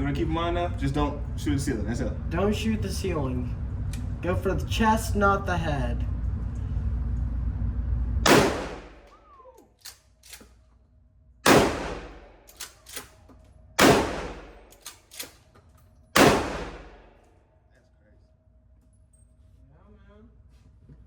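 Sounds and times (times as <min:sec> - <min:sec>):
shotgun shots: 0:08.2 - 0:09.1, 0:11.4 - 0:12.5, 0:13.8 - 0:14.7, 0:16.2 - 0:17.1.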